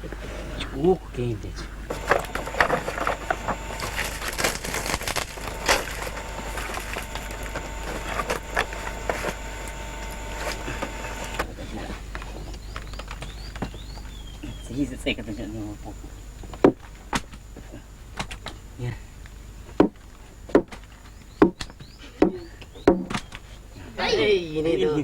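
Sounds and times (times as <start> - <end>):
faint high whine: 1.4 - 11.8
cracks and snaps: 1.9 - 11.5.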